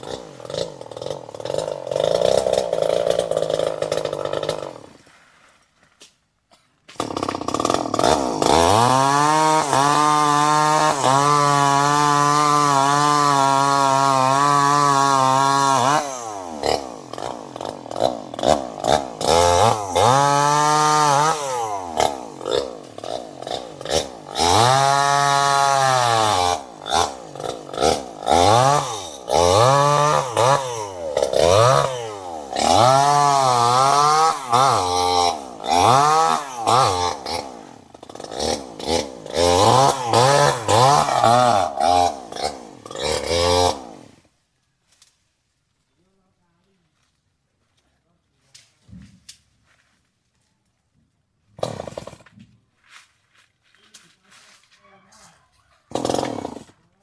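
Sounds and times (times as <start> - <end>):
chainsaw engine revving: 0.0 - 5.0, 6.9 - 44.3, 51.6 - 52.3, 55.9 - 57.0.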